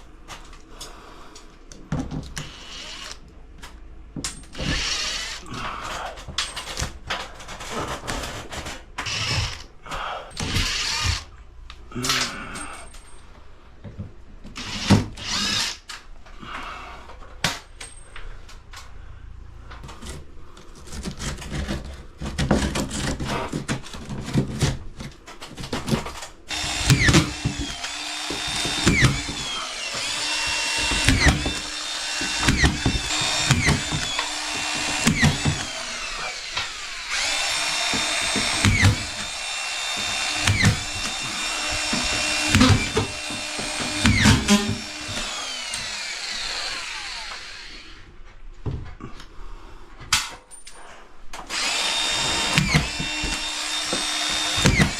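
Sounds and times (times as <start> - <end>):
power drill running: 2.4 - 3.2, 4.6 - 5.5, 9.0 - 9.7, 10.4 - 11.3, 14.6 - 15.8, 26.5 - 48.1, 51.5 - 54.9.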